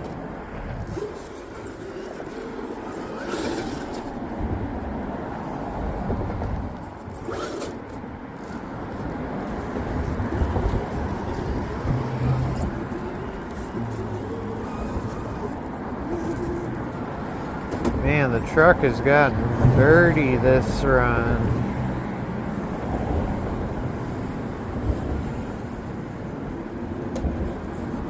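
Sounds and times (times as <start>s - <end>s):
tyres scrabbling on dirt and rock: 6.4s - 21.4s
electric motor whirring: 7.1s - 17.6s.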